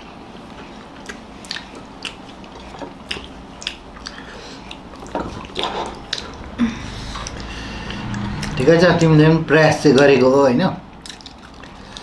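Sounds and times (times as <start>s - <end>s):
people chewing with wet smacks: 0.0s - 6.4s, 11.0s - 12.0s.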